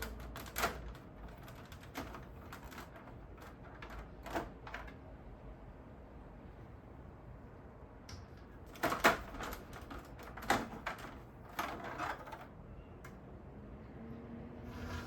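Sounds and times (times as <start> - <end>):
plastic parts clicking: 8.3 - 13.2.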